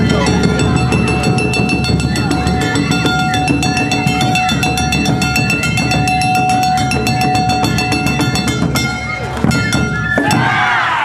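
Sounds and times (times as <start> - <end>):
bamboo flute: 0.0 - 11.0
drums: 0.0 - 11.0.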